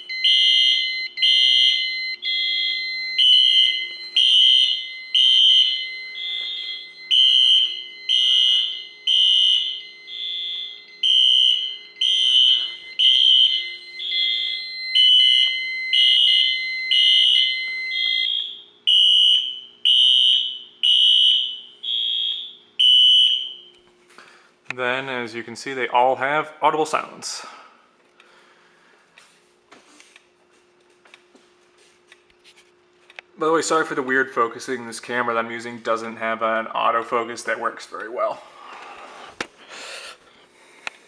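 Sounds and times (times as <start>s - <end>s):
fire alarm horn blasts: 0.0s - 23.8s
steady alarm tone: 0.0s - 24.4s.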